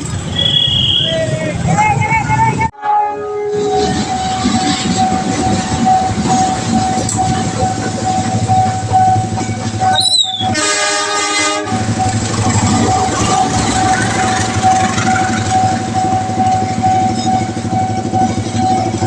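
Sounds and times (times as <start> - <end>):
crossing warning alarm tone: 0.2 - 1.4, 2.8 - 19.0
train horn blast: 2.8 - 5.1, 9.8 - 12.2
train rumbling and rattling: 3.3 - 19.0.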